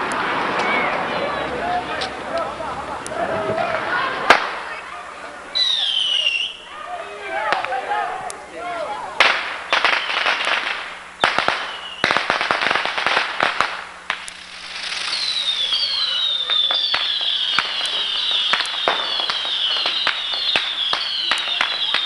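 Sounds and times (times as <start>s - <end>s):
firecracker crackle of pops: 2.0s - 4.8s, 7.4s - 8.4s, 9.2s - 22.0s
firework bangs: 3.2s - 4.8s, 9.2s - 22.0s
falling firework whistles: 5.5s - 6.7s, 9.3s - 22.0s.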